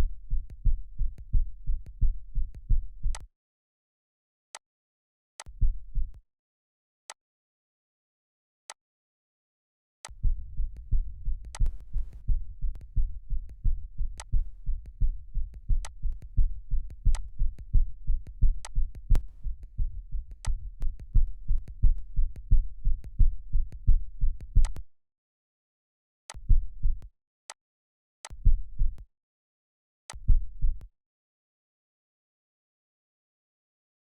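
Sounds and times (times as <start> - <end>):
heartbeat deep low thumps: 0.0 - 3.2, 5.6 - 6.2, 10.1 - 24.8, 26.4 - 27.1, 28.4 - 29.0, 30.2 - 30.9
sharp clicks: 10.0 - 23.8.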